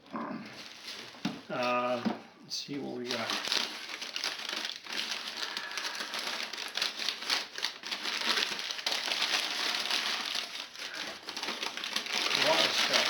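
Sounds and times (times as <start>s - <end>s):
newspaper crinkling and rustling: 0.6s - 13.0s.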